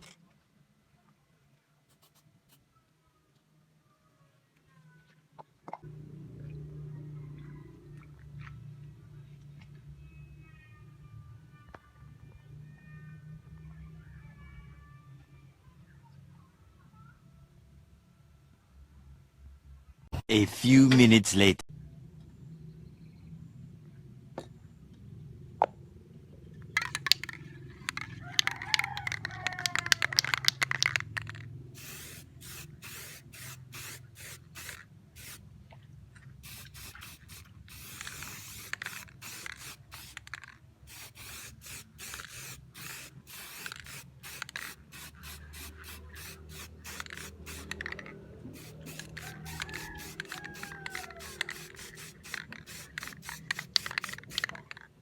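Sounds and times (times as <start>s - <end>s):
spray paint can hissing: 26.8s - 35.4s, 36.4s - 54.7s.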